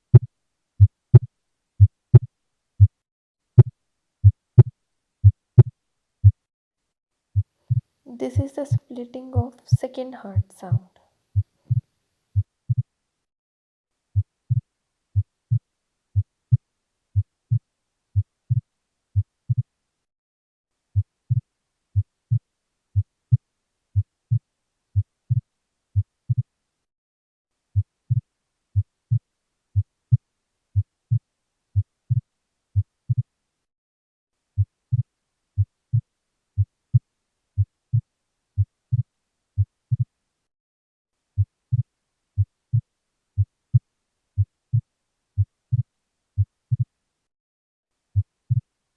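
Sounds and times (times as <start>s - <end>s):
heartbeat through stethoscope: 0.0s - 3.0s, 3.6s - 6.5s, 7.4s - 9.8s, 10.4s - 11.8s, 12.4s - 12.9s, 14.2s - 15.6s, 18.2s - 19.7s, 21.0s - 21.4s, 25.0s - 25.4s, 26.0s - 26.5s, 27.8s - 28.2s, 29.8s - 30.2s, 31.8s - 32.2s, 32.8s - 33.3s, 34.6s - 37.0s, 37.6s - 40.1s, 41.4s - 43.8s, 44.4s - 46.9s, 48.2s - 48.7s.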